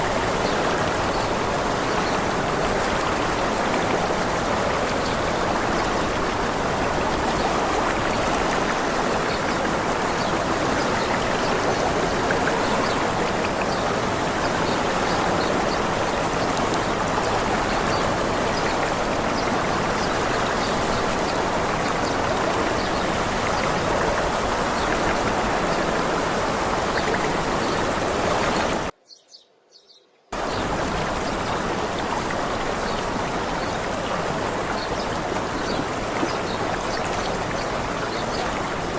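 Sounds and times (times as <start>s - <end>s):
running water rushing: 0.0s - 28.9s, 30.4s - 38.9s.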